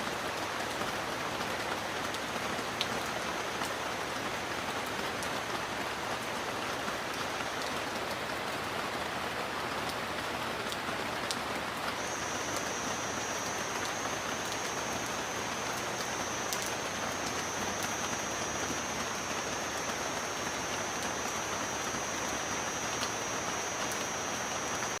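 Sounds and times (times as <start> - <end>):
steady rain falling: 0.0 - 25.0
thin high tone: 12.0 - 25.0.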